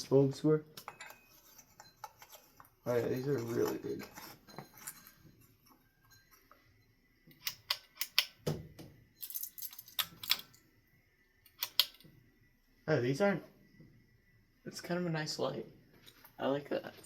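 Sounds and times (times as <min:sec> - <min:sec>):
glass bulbs clicking: 0:07.2 - 0:08.5, 0:09.2 - 0:10.6, 0:11.4 - 0:12.1.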